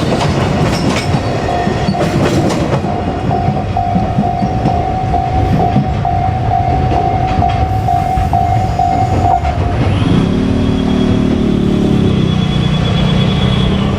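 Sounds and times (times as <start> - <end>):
freight train rumbling over rails: 0.0 - 13.9
level crossing warning bell: 0.7 - 9.7.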